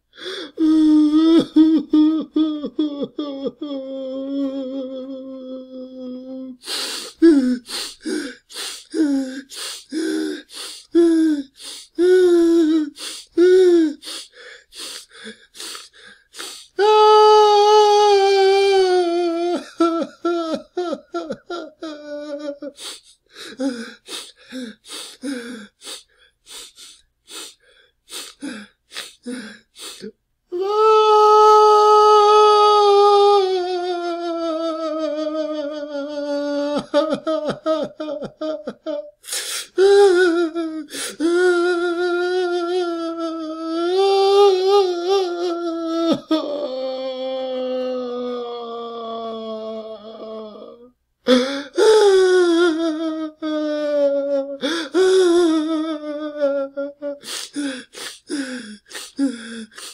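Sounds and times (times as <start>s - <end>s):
man crying and whimpering: 0.4s - 59.9s
sharp gasping breaths: 6.6s - 12.0s, 12.9s - 16.8s, 22.8s - 30.2s, 39.2s - 39.8s, 57.2s - 59.9s.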